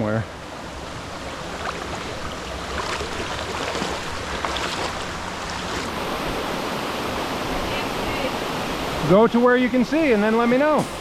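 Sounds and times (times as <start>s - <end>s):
running water rushing: 0.0s - 11.0s
soft taps and splashes: 1.4s - 5.9s.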